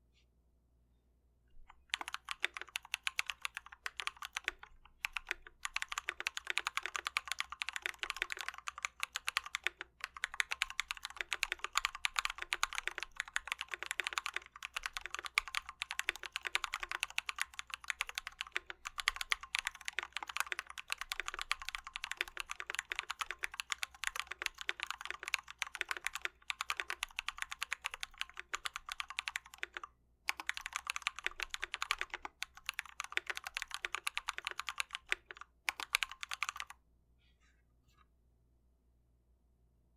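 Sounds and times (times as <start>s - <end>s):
fast mechanical keyboard typing: 1.8s - 36.8s.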